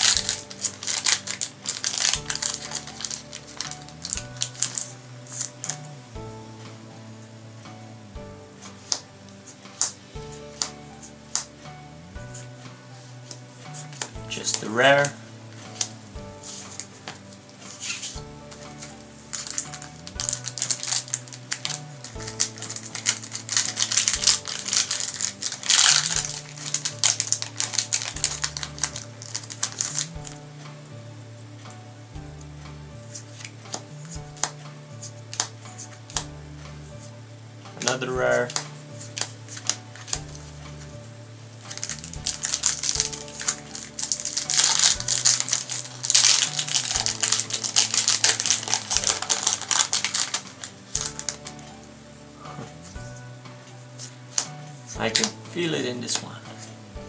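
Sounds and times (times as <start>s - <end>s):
trading cards flicked and snapping: 0.0s - 5.9s, 9.7s - 11.5s, 13.3s - 30.4s, 33.4s - 34.6s, 35.3s - 36.3s, 37.8s - 40.4s, 41.7s - 51.6s
cards rustling: 0.0s - 6.0s, 8.6s - 11.5s, 12.3s - 30.4s, 33.1s - 36.3s, 37.8s - 40.9s, 41.6s - 51.8s, 52.4s - 56.7s
background music with bass line: 0.0s - 57.0s.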